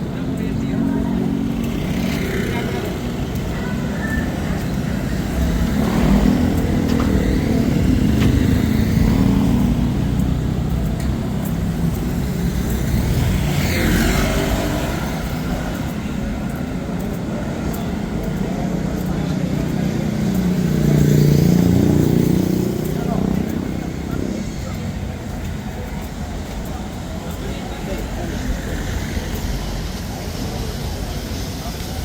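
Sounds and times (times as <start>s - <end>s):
car and motorcycle engines rumbling: 0.0s - 32.0s
vehicle passing by: 0.2s - 16.5s, 17.1s - 25.3s.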